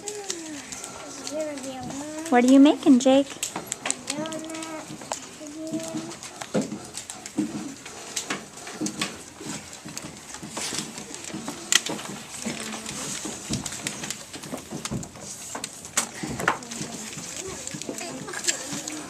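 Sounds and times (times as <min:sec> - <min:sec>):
children's voices: 0:00.0 - 0:02.8, 0:03.8 - 0:06.4, 0:11.2 - 0:13.5, 0:16.0 - 0:19.0
clicks and taps at desks: 0:03.3 - 0:19.0.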